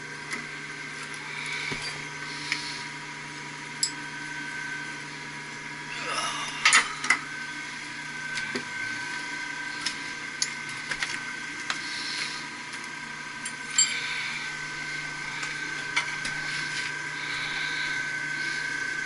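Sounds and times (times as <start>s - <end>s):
machinery whine and hum: 0.0s - 19.0s
tools clinking on metal: 13.4s - 14.0s.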